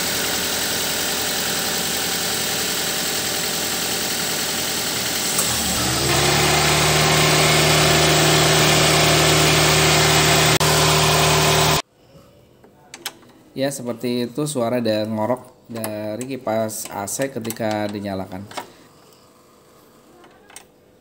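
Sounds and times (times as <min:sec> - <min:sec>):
car engine running: 0:00.0 - 0:11.8
fan motor whine and growl: 0:05.2 - 0:11.8.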